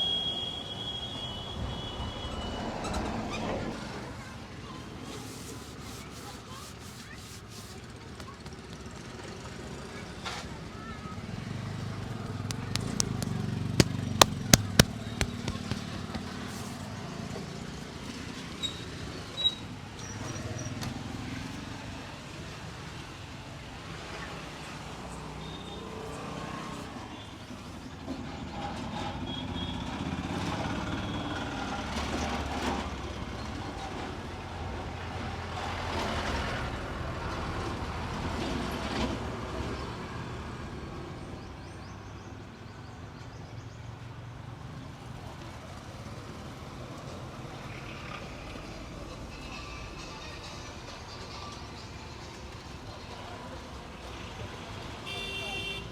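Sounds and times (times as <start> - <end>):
road traffic passing: 11.2 - 19.3.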